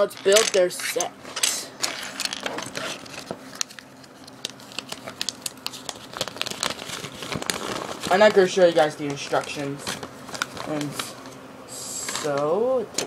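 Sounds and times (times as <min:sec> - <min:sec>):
plastic pieces clicking and rattling: 0:00.0 - 0:02.8
plastic packaging crinkling: 0:01.8 - 0:11.3.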